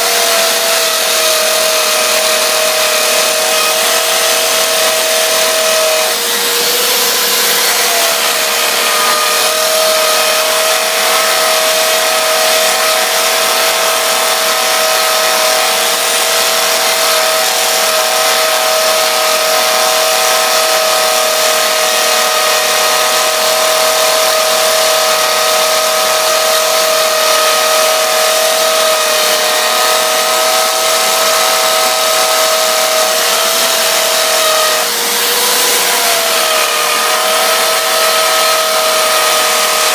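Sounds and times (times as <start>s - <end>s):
electric drill boring into stone: 0.0s - 39.9s.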